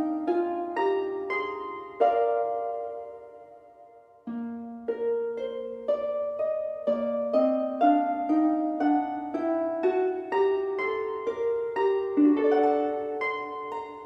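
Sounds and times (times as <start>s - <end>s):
plucked harp-like melody: 0.0s - 14.0s.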